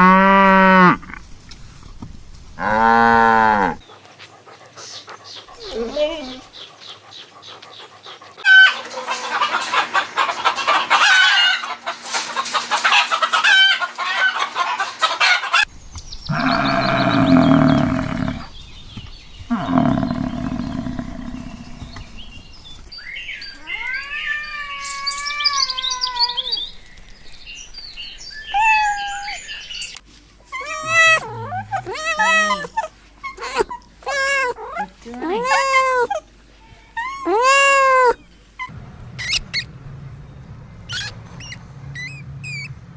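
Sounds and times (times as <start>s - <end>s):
hens clucking: 3.8s - 15.7s, 30.4s - 39.7s.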